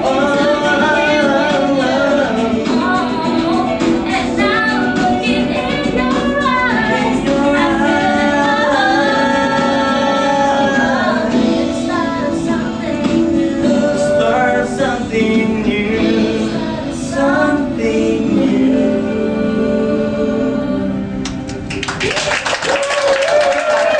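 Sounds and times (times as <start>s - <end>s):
woman singing: 0.0s - 18.6s
instrumental accompaniment: 0.0s - 22.0s.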